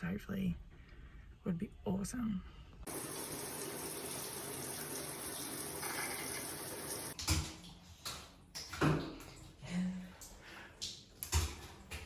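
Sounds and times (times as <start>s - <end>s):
running water: 2.9s - 7.8s.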